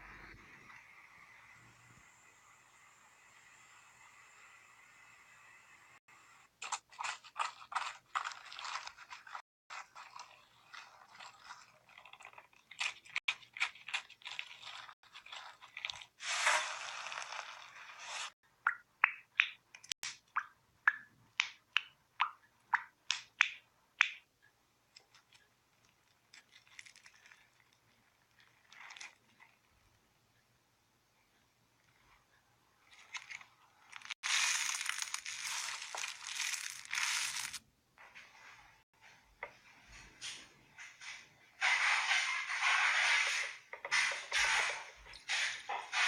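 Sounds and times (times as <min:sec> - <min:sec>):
slime squishing and crackling: 0:33.0 - 0:37.6.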